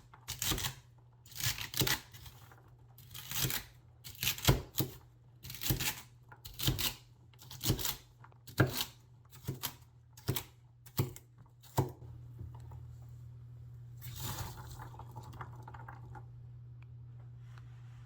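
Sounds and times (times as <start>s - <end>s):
cleaver slicing celery: 0.3s - 2.4s, 3.0s - 12.0s.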